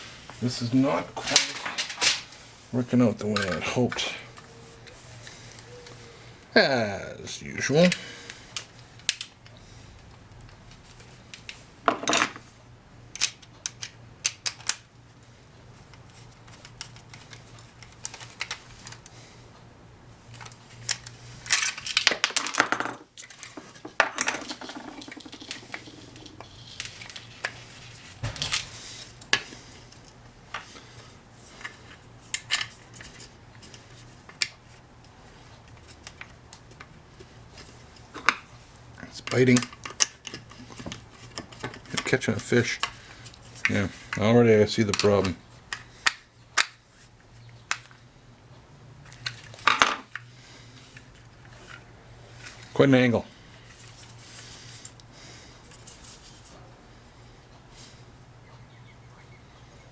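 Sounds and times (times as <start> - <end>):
metal hardware and tools clinking: 21.5 - 27.6
rattling: 24.0 - 27.5.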